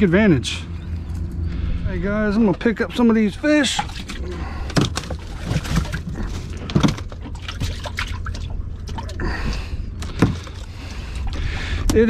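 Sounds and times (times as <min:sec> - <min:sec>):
water splashing and dripping: 0:03.6 - 0:12.0.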